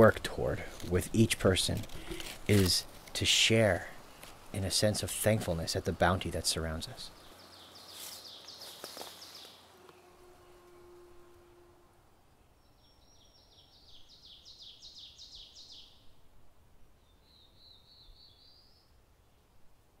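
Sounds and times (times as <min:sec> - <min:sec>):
songbird singing faintly: 0:00.0 - 0:16.2, 0:16.9 - 0:19.7.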